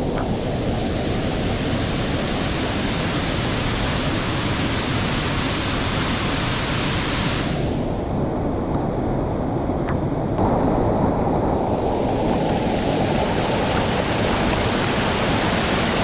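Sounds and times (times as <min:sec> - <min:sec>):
waterfall rushing: 0:00.0 - 0:07.9, 0:11.5 - 0:16.0.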